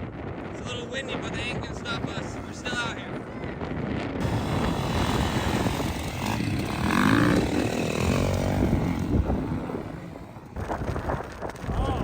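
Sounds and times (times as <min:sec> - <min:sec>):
motor vehicle engine droning: 0:04.2 - 0:10.8.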